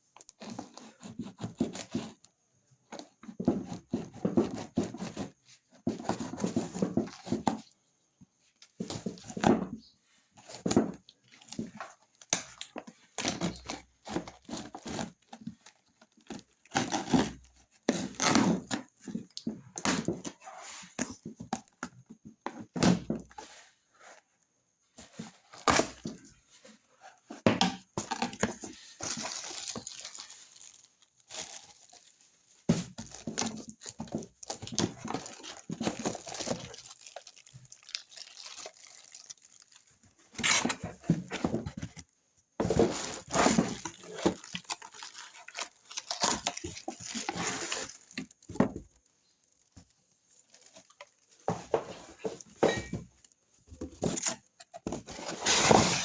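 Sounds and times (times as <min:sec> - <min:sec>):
packaging rustling and tearing: 0:10.4 - 0:19.4, 0:28.0 - 0:42.0, 0:42.6 - 0:53.0.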